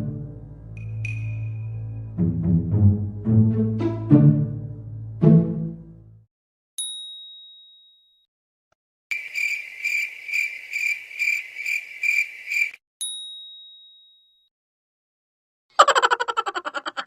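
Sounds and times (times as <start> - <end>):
bright ding: 0.8 - 1.7
cricket chirp effect: 9.1 - 12.8.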